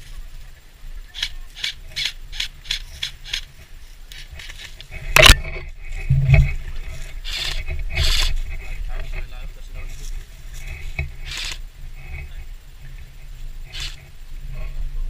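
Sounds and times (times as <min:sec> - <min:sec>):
footsteps crunching on rough ground: 0:02.8 - 0:11.2.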